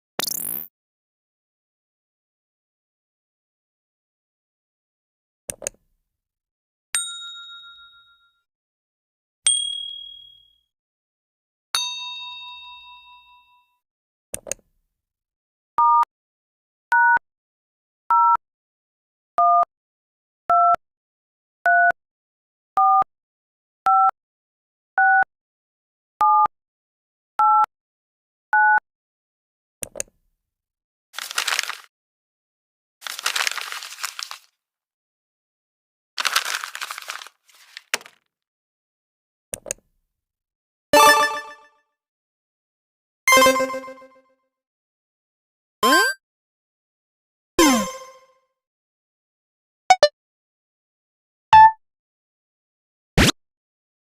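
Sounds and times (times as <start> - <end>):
short two-tone beeps: 49.9 - 50.1.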